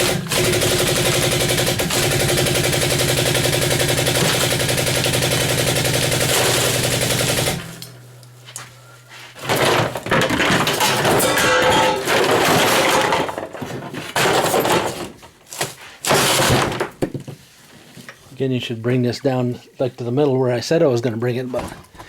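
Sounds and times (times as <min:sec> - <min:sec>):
loud rattling noise: 0:00.0 - 0:07.8
power tool rapid strokes: 0:00.0 - 0:07.8.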